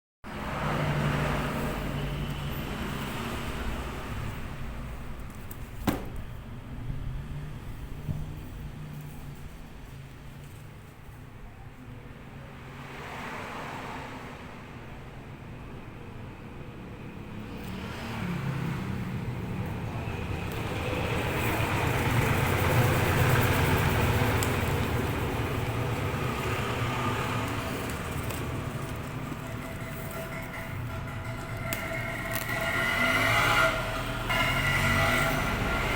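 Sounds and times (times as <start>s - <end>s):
vehicle engine running: 20.2s - 32.4s.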